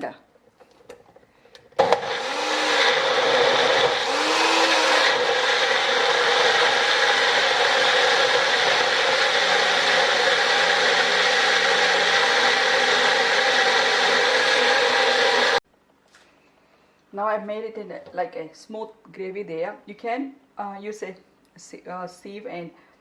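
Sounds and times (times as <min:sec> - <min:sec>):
electric blender running: 0:01.8 - 0:15.6.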